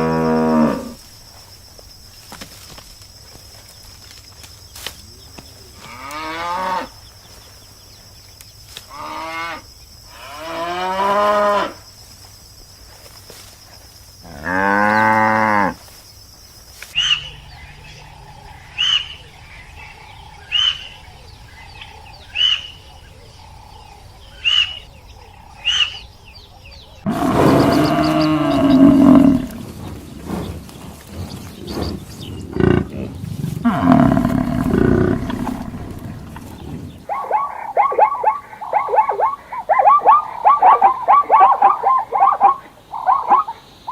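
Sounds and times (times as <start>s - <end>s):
cow mooing: 27.0s - 29.6s, 32.6s - 36.4s
large animal roaring: 27.0s - 29.7s, 32.4s - 36.8s
dog barking: 37.1s - 43.6s.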